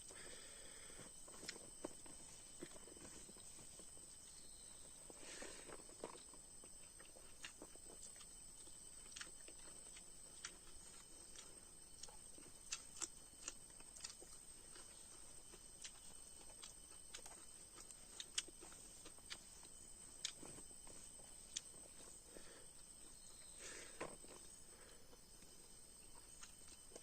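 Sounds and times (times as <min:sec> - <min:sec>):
chewing mouth clicks and smacks: 0:01.3 - 0:02.0, 0:05.7 - 0:22.1.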